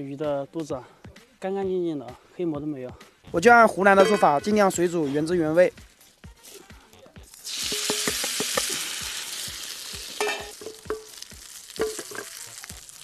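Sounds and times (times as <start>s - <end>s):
utensil knocking against pan: 3.9s - 4.7s, 7.6s - 8.8s, 10.2s - 11.2s, 11.8s - 12.4s
food sizzling in hot oil: 5.8s - 13.0s.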